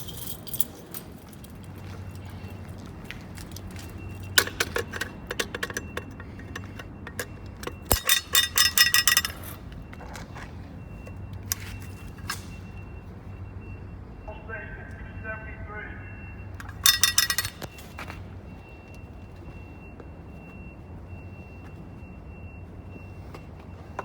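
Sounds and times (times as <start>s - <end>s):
keys jangling: 0.0s - 2.3s, 3.4s - 9.6s, 16.6s - 17.8s.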